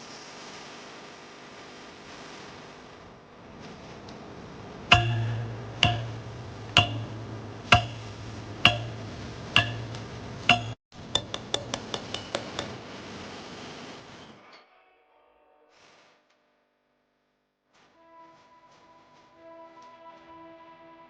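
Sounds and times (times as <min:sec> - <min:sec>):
held low bass note: 0:04.9 - 0:10.8
woodblock-like click beat: 0:04.9 - 0:12.8.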